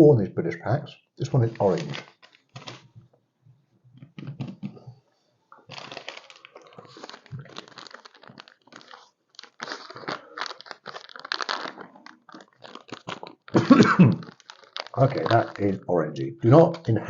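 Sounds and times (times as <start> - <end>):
plastic sachet crinkling: 1.2 - 3.0, 5.6 - 15.9.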